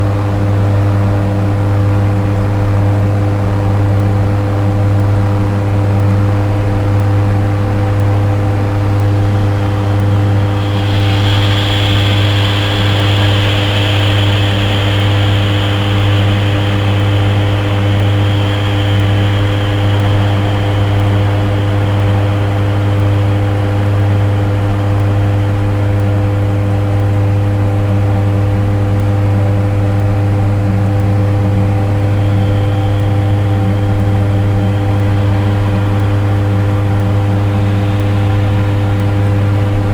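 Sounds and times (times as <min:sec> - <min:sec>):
dark ambient electronic drone: 0:00.0 - 0:39.9
high hissing whistle: 0:07.9 - 0:25.9, 0:31.6 - 0:39.9.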